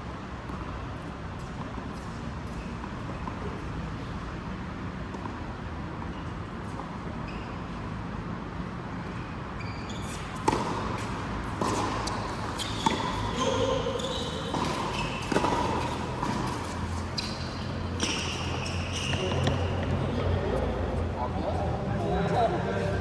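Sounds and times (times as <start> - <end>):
shoe squeaks on court floor: 6.1 - 7.9, 9.1 - 20.8
racket striking ball: 10.4 - 19.9.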